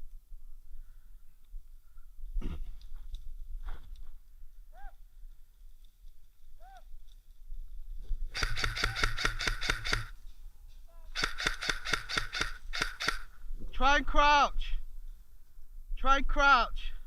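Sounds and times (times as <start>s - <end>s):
airsoft rifle full-auto bursts: 8.4s - 10.2s, 11.1s - 13.3s.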